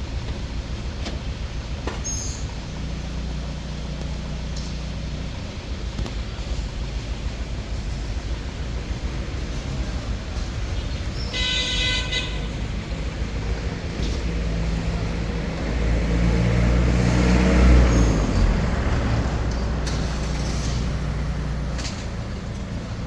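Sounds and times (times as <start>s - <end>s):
steady traffic noise: 0.0s - 23.0s
vehicle horn toot: 11.2s - 13.0s
vehicle passing close by: 12.2s - 23.0s.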